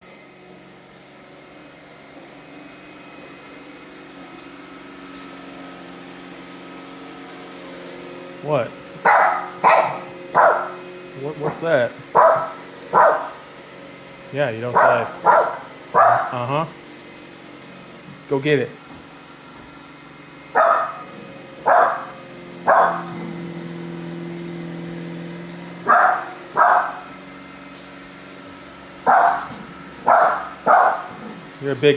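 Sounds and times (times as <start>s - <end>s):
robot vacuum motor hum: 0.2s - 31.9s
dog barking: 9.0s - 10.8s, 11.4s - 13.4s, 14.7s - 16.4s, 20.6s - 23.2s, 25.8s - 27.1s, 29.0s - 31.4s.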